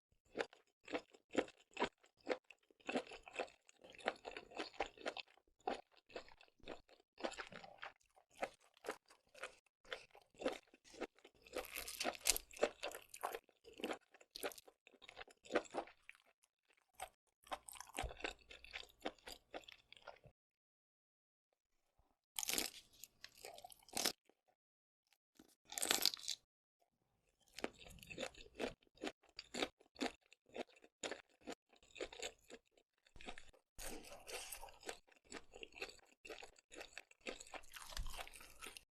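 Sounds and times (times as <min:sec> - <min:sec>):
chewing with wet crunches: 0:00.3 - 0:20.2, 0:27.6 - 0:38.9.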